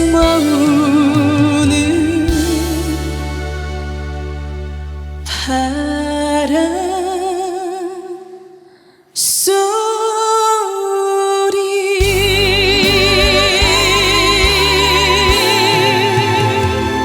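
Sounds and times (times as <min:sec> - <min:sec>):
woman singing with vibrato: 0:00.0 - 0:03.6, 0:05.3 - 0:17.0
band accompaniment: 0:00.0 - 0:05.2, 0:12.0 - 0:17.0.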